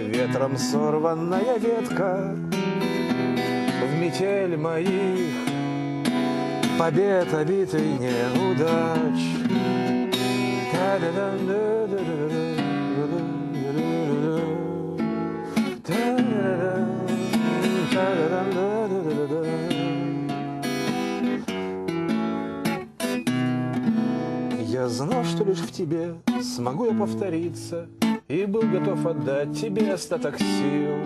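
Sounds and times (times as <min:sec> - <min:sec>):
acoustic guitar strumming chords: 0:00.0 - 0:31.0.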